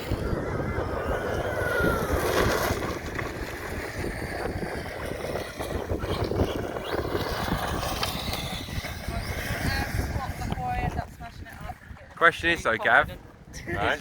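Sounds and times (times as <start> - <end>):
electric motor whine: 0.0 - 10.6
wind buffeting microphone: 0.0 - 14.0.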